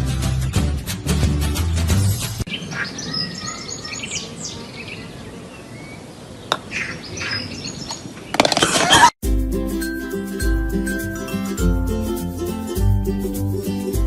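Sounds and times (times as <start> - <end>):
small birds chirping: 2.4 - 9.0.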